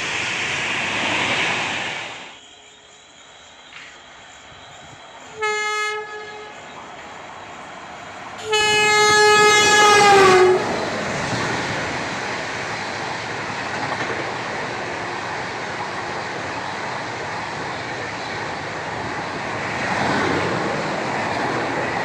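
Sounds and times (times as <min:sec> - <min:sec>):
train coaches rushing past: 0:00.0 - 0:22.0
locomotive horn blasts: 0:05.4 - 0:06.6, 0:08.4 - 0:10.8.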